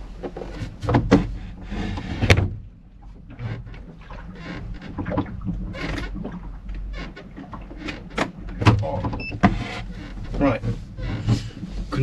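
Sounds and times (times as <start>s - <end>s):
handling knocks and rustles: 0.0s - 2.7s.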